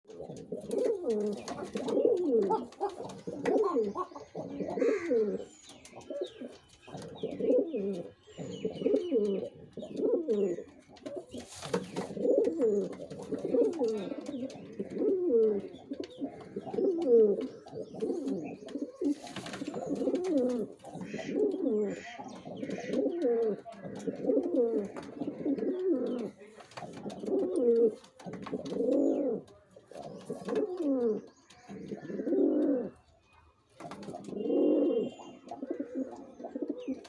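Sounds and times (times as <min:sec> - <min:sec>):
pigeon cooing: 0:00.1 - 0:33.0, 0:33.9 - 0:37.0.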